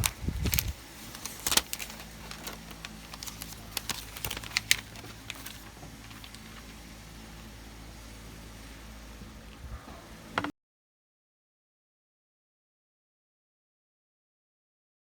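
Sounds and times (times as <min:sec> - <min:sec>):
faint low hum: 0:00.0 - 0:10.5.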